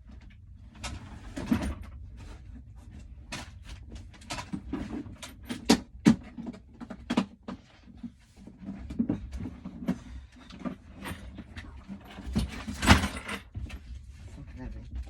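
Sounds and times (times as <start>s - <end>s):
objects knocking and clattering: 8.6s - 15.0s.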